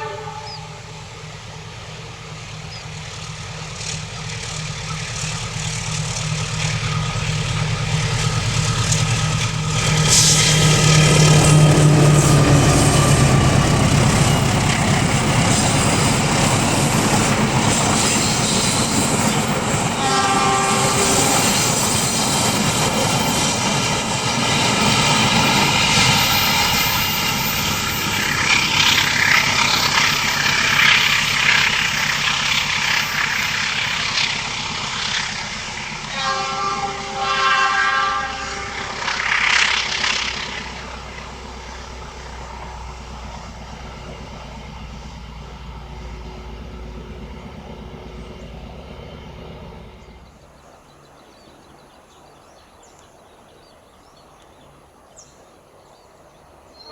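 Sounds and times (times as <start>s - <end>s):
locomotive horn: 0.0s - 1.3s, 19.9s - 21.8s, 36.0s - 40.6s
train rumbling past: 0.0s - 56.9s.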